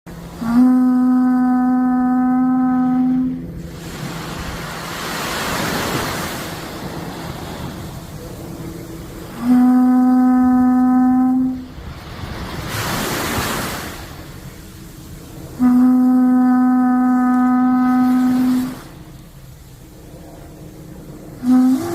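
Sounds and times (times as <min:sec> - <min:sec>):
conch shell trumpet blasts: 0:00.3 - 0:03.6, 0:09.2 - 0:11.9, 0:15.5 - 0:19.1, 0:21.3 - 0:21.9.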